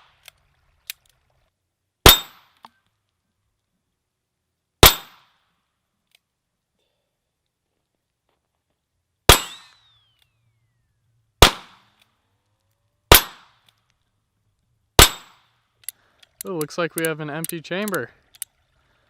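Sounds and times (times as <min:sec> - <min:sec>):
revolver gunshots: 0:09.3 - 0:10.0, 0:11.4 - 0:11.9, 0:13.1 - 0:13.6, 0:15.0 - 0:15.5.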